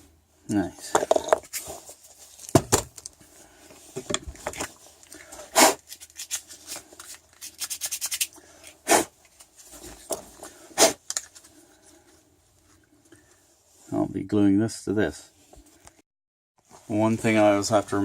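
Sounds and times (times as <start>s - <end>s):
hands scraping and rubbing pieces: 3.9s - 11.6s.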